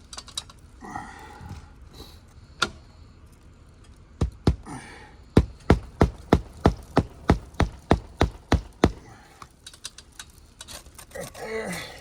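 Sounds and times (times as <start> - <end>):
sharp knocks on shingle roof: 4.2 - 4.7, 5.4 - 9.2.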